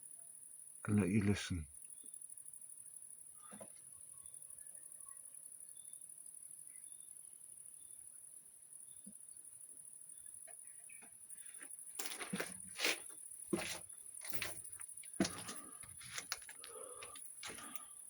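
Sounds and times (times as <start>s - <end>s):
crickets and grasshoppers chirping: 0.0s - 18.0s.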